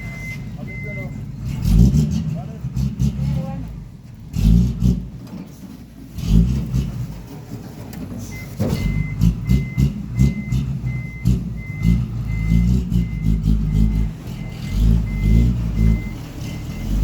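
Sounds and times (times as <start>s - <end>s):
reversing alarm beeps: 0.0s - 1.2s, 8.3s - 17.0s
truck engine running unevenly: 0.0s - 17.0s.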